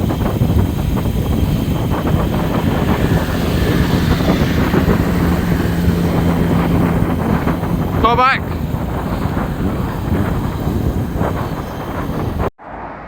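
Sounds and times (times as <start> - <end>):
low engine-like hum: 0.0 - 12.5
vehicle noise: 0.0 - 13.0
wind rumbling on microphone: 0.0 - 13.0.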